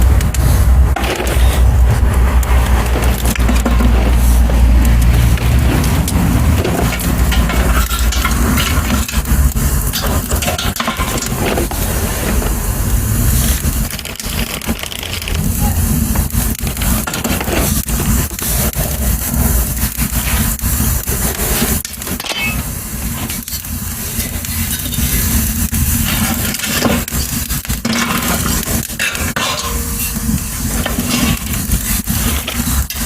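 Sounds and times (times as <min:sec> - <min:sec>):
low fire rumble: 0:00.0 - 0:33.0
wood fire crackling and popping: 0:00.0 - 0:33.0.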